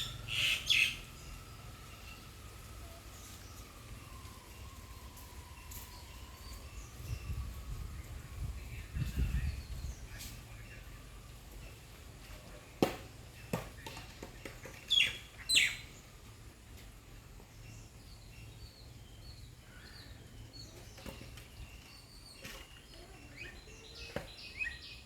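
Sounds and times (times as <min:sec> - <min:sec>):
loud downward sweeping bird calls: 0:00.0 - 0:02.4
birds chirping: 0:00.0 - 0:25.0.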